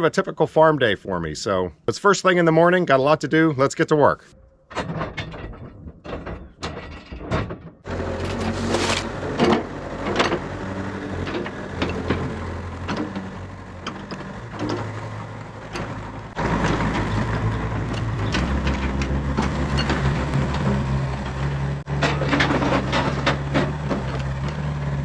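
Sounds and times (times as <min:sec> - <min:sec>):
excavator diesel engine running: 0:16.3 - 0:21.8.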